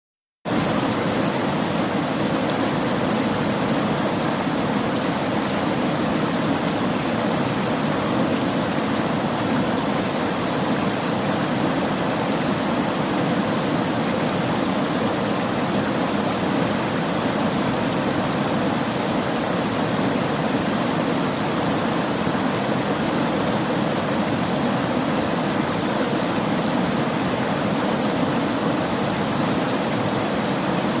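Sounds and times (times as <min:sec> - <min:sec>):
river water flowing over rocks: 0:00.5 - 0:31.0.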